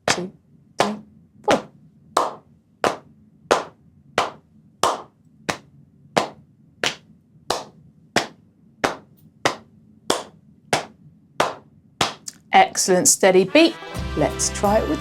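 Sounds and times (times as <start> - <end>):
hand clap: 2.2 - 12.4.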